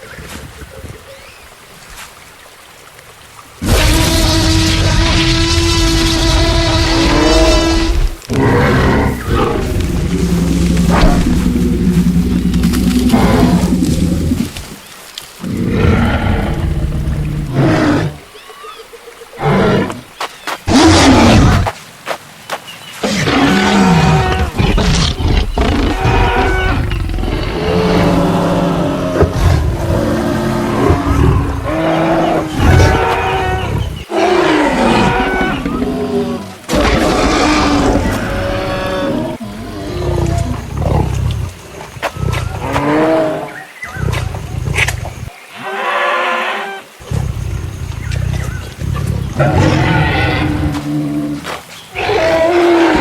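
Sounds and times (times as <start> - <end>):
deep animal roars and growls: 3.6 - 14.7, 15.4 - 18.2, 23.2 - 43.4.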